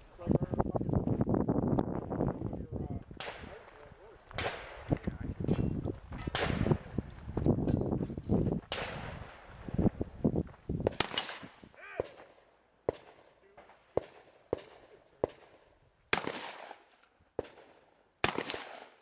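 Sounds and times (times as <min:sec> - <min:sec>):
shotgun shots: 0:03.2 - 0:03.7, 0:04.4 - 0:05.1, 0:06.1 - 0:06.9, 0:08.7 - 0:09.4, 0:10.8 - 0:19.0.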